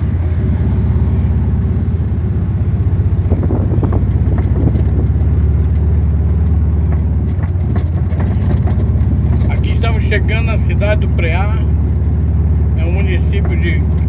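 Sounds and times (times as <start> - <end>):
vehicle engine running: 0.0 - 14.0
knocks and rattles: 3.1 - 14.0.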